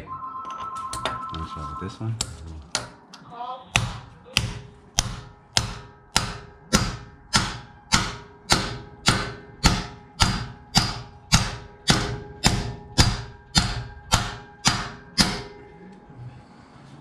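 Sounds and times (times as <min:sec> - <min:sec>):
hammer striking metal: 0:03.7 - 0:15.7.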